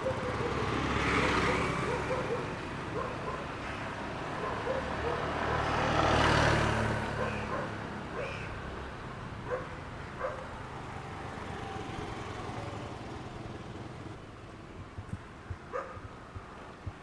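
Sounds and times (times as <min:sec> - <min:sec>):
dog barking: 0:00.0 - 0:00.7, 0:01.4 - 0:03.6, 0:04.3 - 0:05.7, 0:07.1 - 0:08.5, 0:09.4 - 0:10.5, 0:15.7 - 0:16.1.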